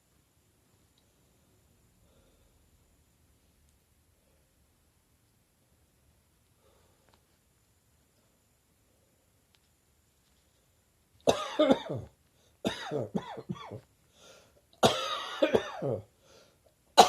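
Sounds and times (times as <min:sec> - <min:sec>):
person coughing: 0:11.3 - 0:12.1, 0:12.7 - 0:13.8, 0:14.8 - 0:16.1.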